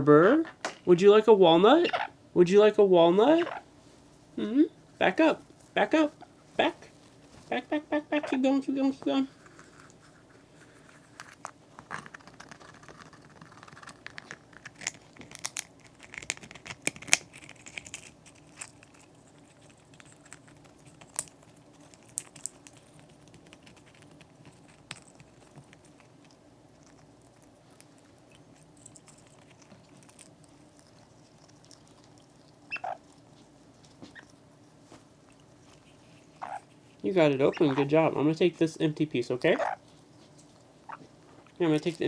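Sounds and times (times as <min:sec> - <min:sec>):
parrot cracking nut shell: 0:11.1 - 0:33.1.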